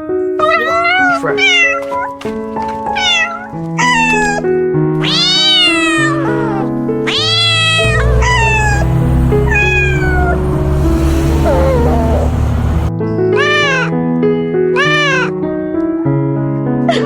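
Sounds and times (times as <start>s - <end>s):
cat meowing: 0.4s - 2.2s, 2.8s - 10.4s, 13.4s - 14.0s, 14.8s - 15.4s.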